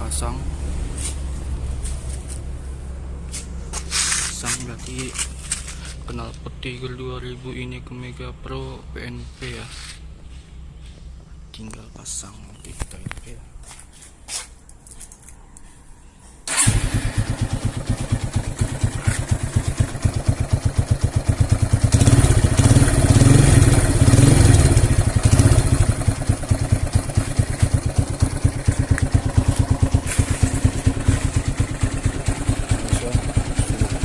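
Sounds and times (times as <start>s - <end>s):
motorcycle engine idling and revving: 0.0s - 8.6s, 16.4s - 34.0s.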